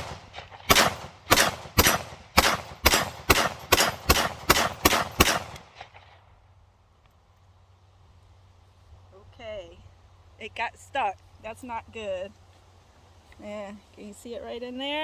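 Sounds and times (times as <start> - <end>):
rifle shots: 0.0 - 6.2.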